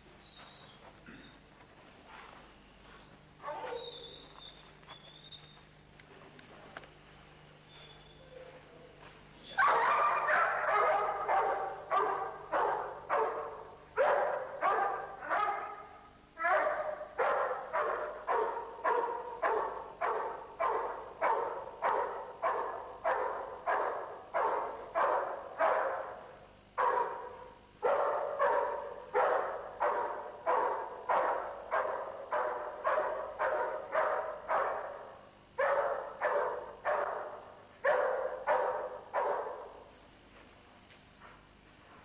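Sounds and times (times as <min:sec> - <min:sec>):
dog barking: 0:03.4 - 0:04.1, 0:09.6 - 0:39.9.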